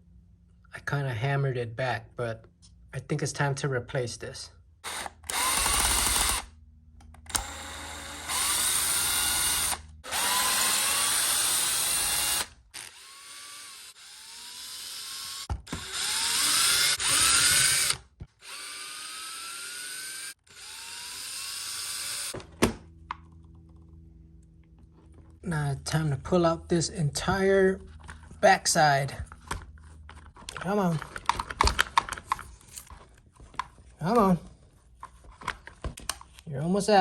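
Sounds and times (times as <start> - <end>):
electric screwdriver whining: 4.8 - 6.5, 7.2 - 22.4.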